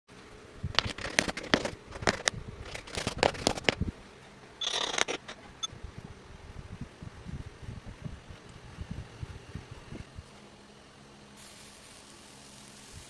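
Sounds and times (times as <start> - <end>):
sharp clicks and knocks: 0.8 - 3.8, 4.6 - 5.7
short hiss: 11.4 - 13.0.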